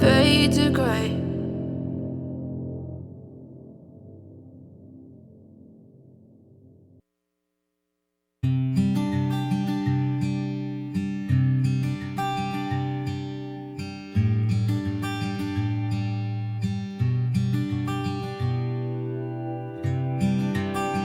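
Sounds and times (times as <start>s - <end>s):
acoustic guitar picked and strummed: 0.0s - 3.0s, 8.4s - 21.0s.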